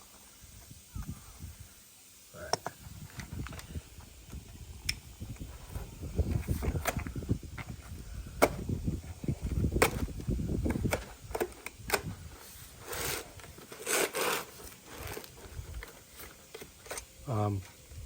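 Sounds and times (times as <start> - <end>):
cardboard rustling or tearing: 12.4 - 17.0
cardboard package handling: 12.8 - 17.1.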